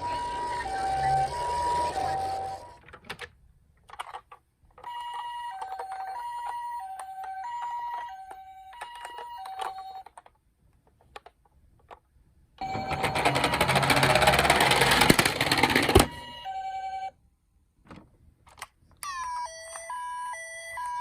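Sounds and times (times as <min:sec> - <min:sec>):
toy ambulance two-tone siren: 0:00.0 - 0:02.8, 0:04.8 - 0:10.2, 0:12.6 - 0:17.2, 0:19.0 - 0:21.0.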